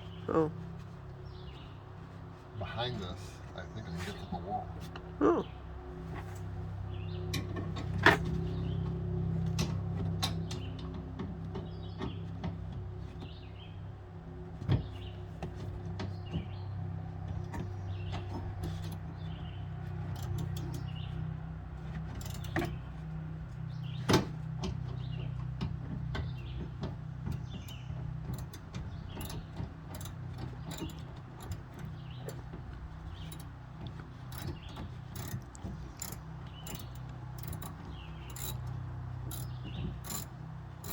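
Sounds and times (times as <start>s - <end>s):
tools and parts clicking and tapping: 20.0s - 20.9s, 21.9s - 23.0s, 24.1s - 40.9s.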